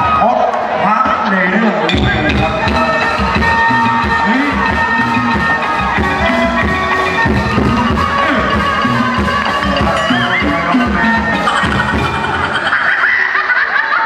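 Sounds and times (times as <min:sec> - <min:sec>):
drums: 0:01.9 - 0:13.1
wood block percussion: 0:01.9 - 0:13.1
melodic instruments: 0:01.9 - 0:13.4.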